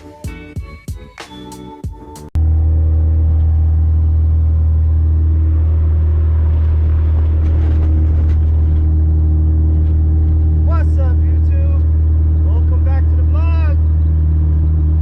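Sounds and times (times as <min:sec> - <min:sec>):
car engine running: 0:02.4 - 0:15.0.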